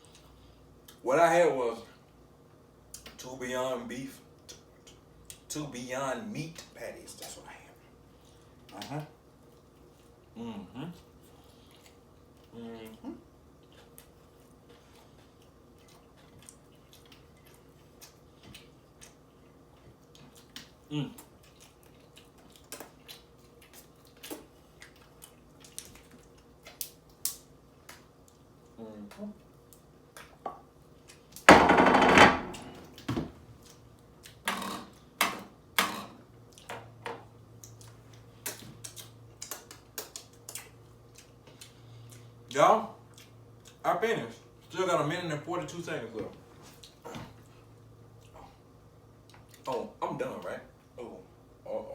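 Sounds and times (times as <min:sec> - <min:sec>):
person chewing wetly: 0:08.1 - 0:31.5, 0:32.8 - 0:35.1, 0:36.3 - 0:43.8, 0:46.6 - 0:49.9.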